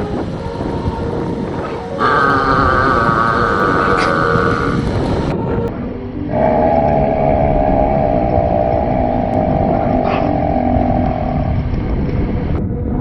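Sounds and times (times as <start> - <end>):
wind buffeting microphone: 0.0 - 13.0
person burping: 2.0 - 4.9.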